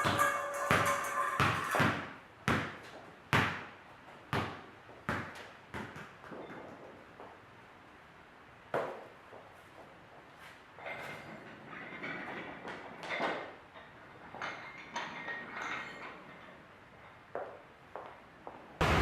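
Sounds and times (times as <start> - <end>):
steady ringing tone: 0.0 - 1.8.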